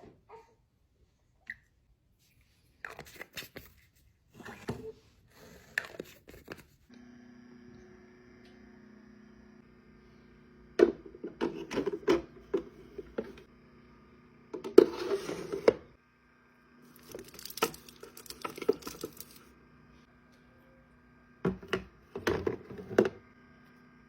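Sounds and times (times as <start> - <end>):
crinkling: 16.9 - 19.5.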